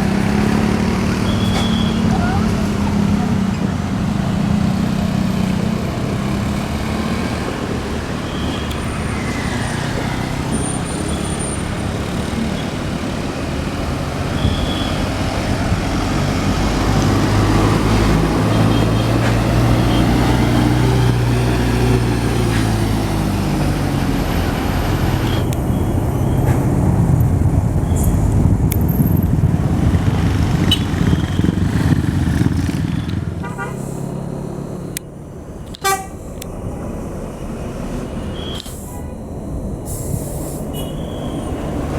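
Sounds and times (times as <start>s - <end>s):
bus diesel engine running: 0.0s - 41.9s
road traffic noise: 0.0s - 41.9s.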